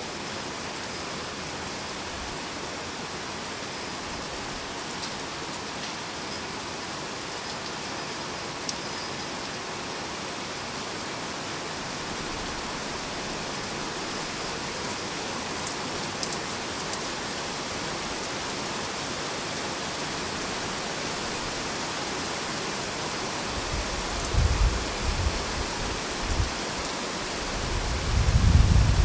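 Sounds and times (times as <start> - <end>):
heavy rain falling: 0.0 - 29.0
sharp drip ticks: 14.1 - 17.1.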